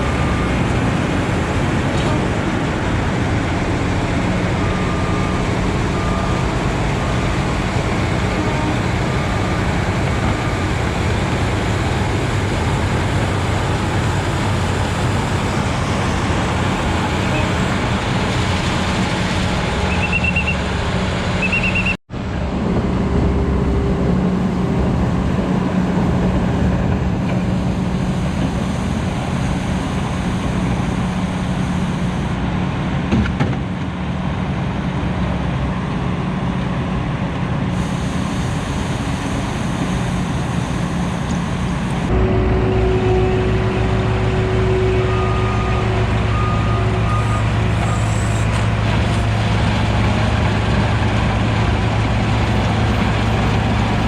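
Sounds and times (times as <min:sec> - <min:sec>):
reversing alarm beeping: 0:00.0 - 0:01.5, 0:03.7 - 0:18.0, 0:21.4 - 0:22.0, 0:37.8 - 0:49.2
heavy machinery engines running: 0:00.0 - 0:54.0.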